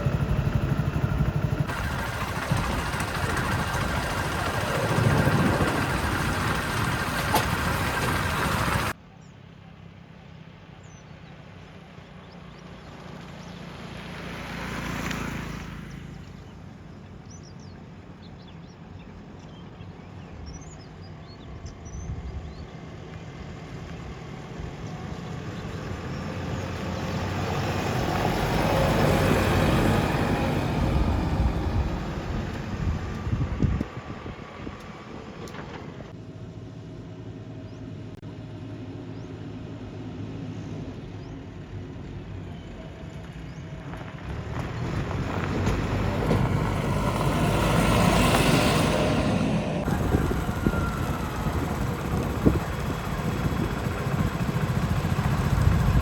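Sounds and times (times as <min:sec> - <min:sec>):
diesel engine running: 0:00.0 - 0:09.0, 0:23.0 - 0:56.0.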